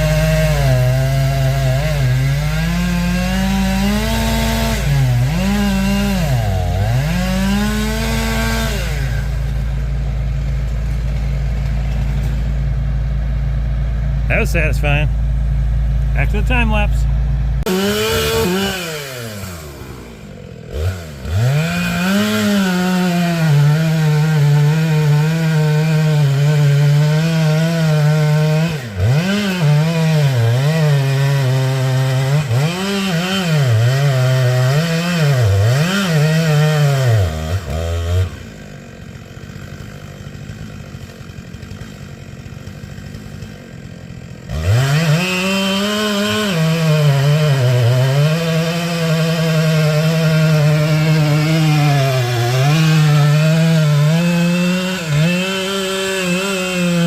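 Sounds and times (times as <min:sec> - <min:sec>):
chainsaw engine revving: 0:00.0 - 0:57.0.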